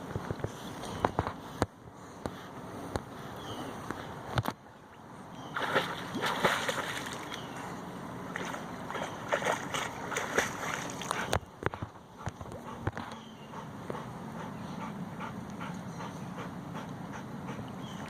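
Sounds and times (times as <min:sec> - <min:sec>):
water splashing and sloshing: 0:03.8 - 0:18.0.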